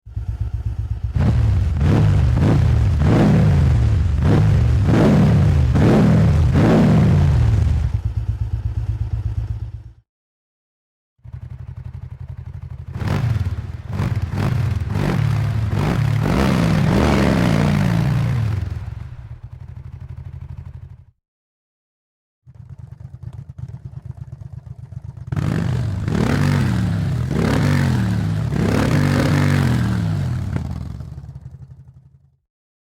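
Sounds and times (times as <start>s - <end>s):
motorcycle engine idling: 0.1s - 10.0s, 11.2s - 21.1s, 22.5s - 27.0s, 30.4s - 32.4s
motorcycle engine revving: 0.1s - 10.0s, 11.2s - 21.1s, 22.5s - 32.1s.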